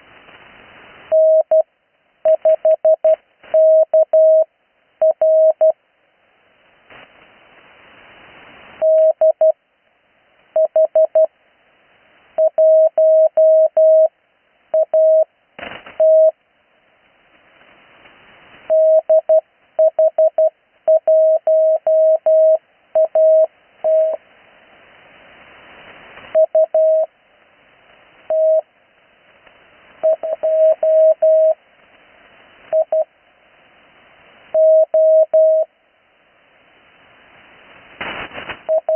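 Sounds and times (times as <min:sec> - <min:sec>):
receiver band noise: 0:00.0 - 0:05.8, 0:06.6 - 0:09.7, 0:12.2 - 0:38.9
static crackle: 0:00.0 - 0:38.9
morse code tone: 0:01.1 - 0:01.6, 0:02.3 - 0:05.8, 0:08.8 - 0:09.6, 0:12.4 - 0:14.1, 0:14.8 - 0:15.3, 0:16.0 - 0:16.4, 0:18.7 - 0:24.2, 0:26.4 - 0:27.1, 0:28.3 - 0:28.6, 0:30.0 - 0:31.6, 0:34.6 - 0:35.7, 0:38.7 - 0:38.9.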